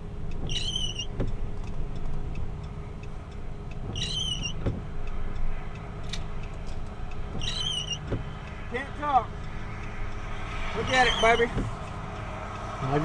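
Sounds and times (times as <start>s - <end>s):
vehicle engine and road noise: 0.0s - 13.0s.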